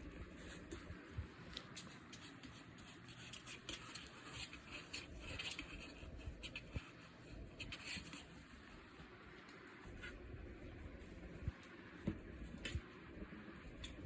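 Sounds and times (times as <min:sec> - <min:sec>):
puppies scratching at cardboard: 0:00.0 - 0:08.5.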